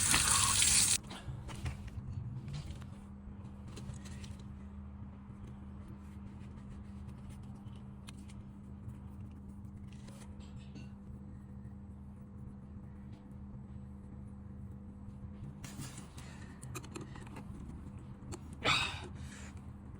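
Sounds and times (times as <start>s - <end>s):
faint clicks and scrapes: 15.6s - 18.5s.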